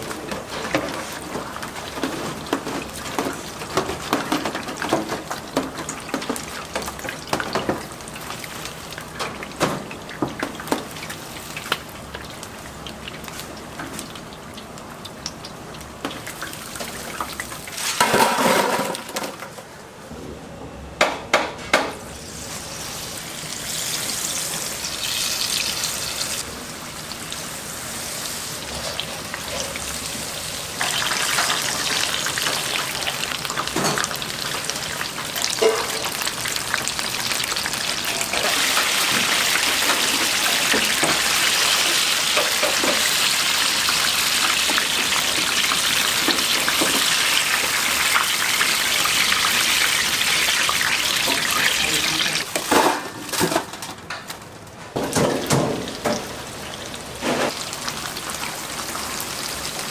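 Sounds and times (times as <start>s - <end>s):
utensils clinking on pans: 0.0s - 7.9s, 16.1s - 19.5s, 33.4s - 34.6s, 35.4s - 36.3s, 38.0s - 47.8s, 50.4s - 56.3s
hot oil sizzling: 0.0s - 19.3s, 22.0s - 53.4s, 55.0s - 59.9s.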